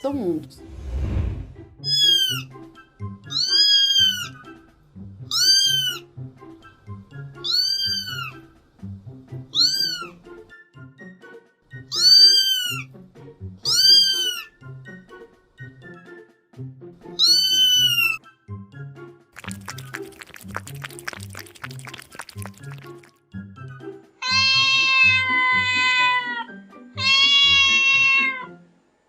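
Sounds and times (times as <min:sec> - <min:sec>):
background music: 0:00.0 - 0:29.0
cat meowing: 0:01.8 - 0:02.4, 0:03.3 - 0:04.3, 0:05.3 - 0:06.0, 0:07.4 - 0:08.4, 0:09.5 - 0:10.2, 0:11.9 - 0:12.9, 0:13.6 - 0:14.5, 0:17.2 - 0:18.2, 0:24.2 - 0:28.6.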